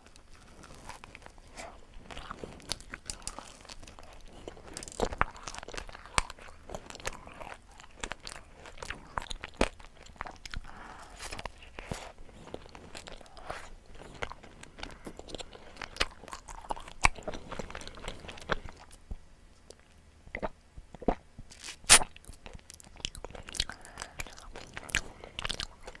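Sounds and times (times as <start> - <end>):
chewing: 0.0 - 26.0
crunching bites: 0.1 - 19.0.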